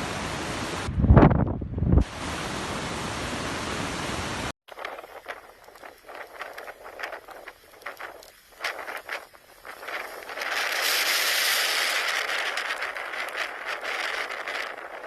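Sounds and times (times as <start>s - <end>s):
wind on microphone: 0.0s - 2.6s, 4.7s - 15.0s
faint ticks and crackles: 4.7s - 15.0s.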